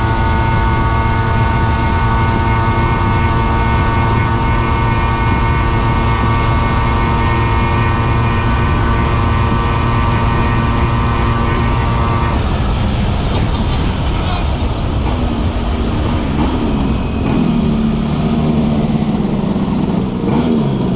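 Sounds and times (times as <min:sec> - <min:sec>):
scooter engine at high revs: 0:00.0 - 0:20.9.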